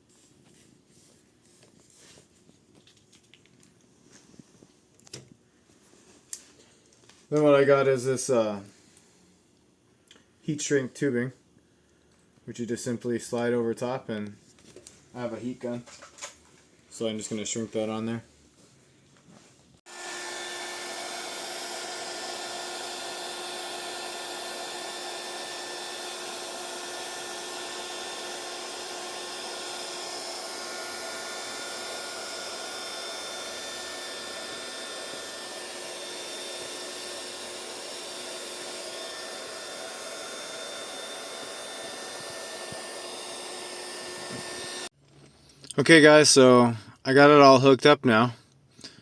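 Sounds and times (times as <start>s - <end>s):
heat gun blowing air: 19.9s - 44.9s.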